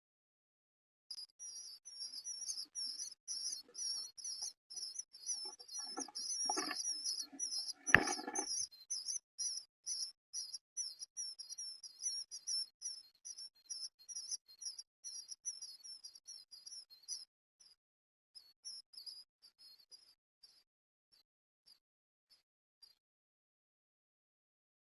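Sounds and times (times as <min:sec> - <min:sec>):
sharp knock: 0:07.9 - 0:08.5.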